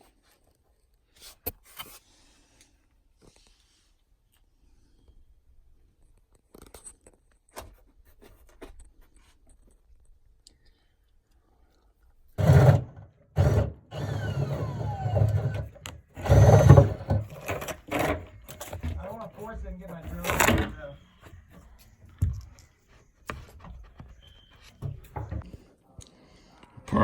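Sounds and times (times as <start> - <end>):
cables scraping through a wall: 12.4 - 22.0.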